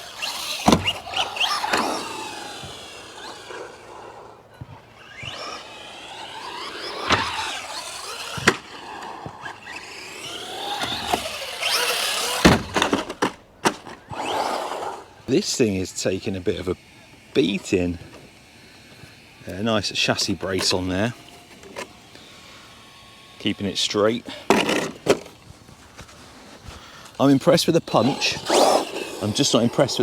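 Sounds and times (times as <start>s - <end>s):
toy truck landing knocks: 0.0s - 3.9s, 5.1s - 14.5s, 24.4s - 25.4s
electric motor whining: 0.0s - 30.0s.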